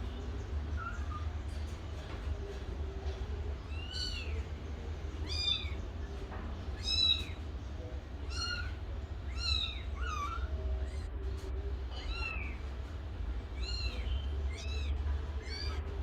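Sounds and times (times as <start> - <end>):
steady low hum: 0.0 - 16.0
kitten meowing: 5.2 - 5.8, 6.8 - 7.4, 8.2 - 11.1, 12.0 - 12.6, 13.6 - 15.9.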